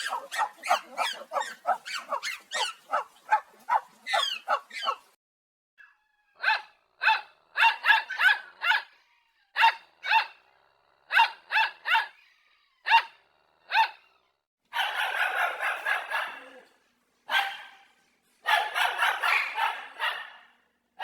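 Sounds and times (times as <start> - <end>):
dog barking: 0.0 - 5.2, 6.4 - 8.9, 9.6 - 10.4, 11.1 - 12.2, 12.8 - 14.1, 14.7 - 20.6.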